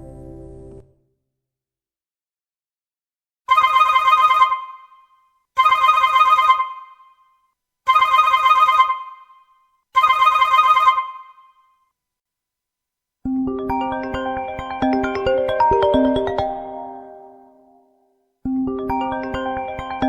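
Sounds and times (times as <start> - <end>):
trilling phone ringtone: 3.5 - 11.8, 13.6 - 17.6.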